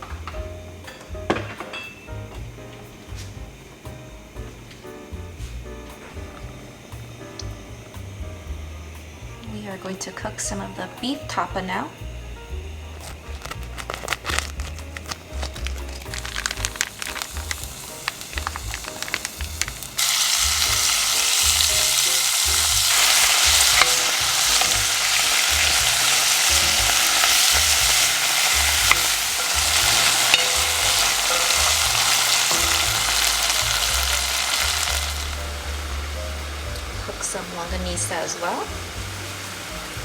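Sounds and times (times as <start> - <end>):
meat sizzling in a hot pan: 2.1 - 40.0
spattering fat pops: 13.0 - 35.4.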